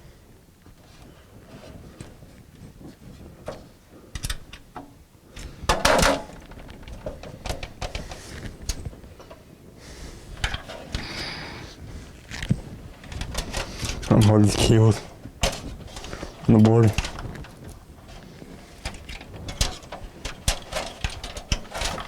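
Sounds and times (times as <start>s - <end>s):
rustling: 5.5s - 22.0s
computer parts clicking and knocking: 5.7s - 8.2s, 15.4s - 15.7s, 18.8s - 22.0s
clatter: 17.0s - 22.0s.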